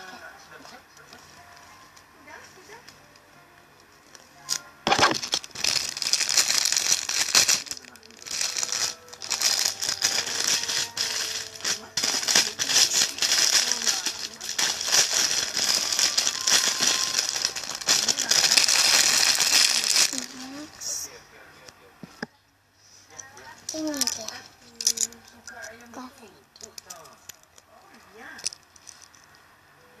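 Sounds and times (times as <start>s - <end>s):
plastic packaging crinkling: 4.1s - 20.8s.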